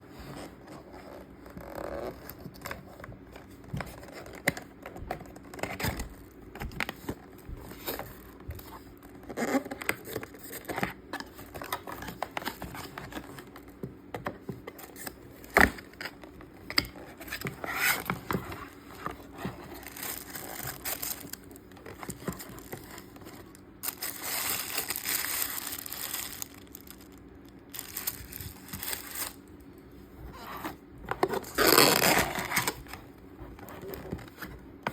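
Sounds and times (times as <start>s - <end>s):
packaging rustling: 0.3s - 34.9s
wrapping crinkling and tearing: 14.7s - 29.6s, 31.3s - 34.4s.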